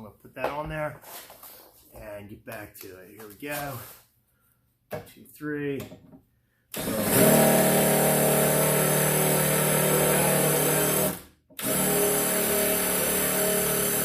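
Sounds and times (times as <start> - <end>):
impact driver motor whine: 6.8 - 14.0.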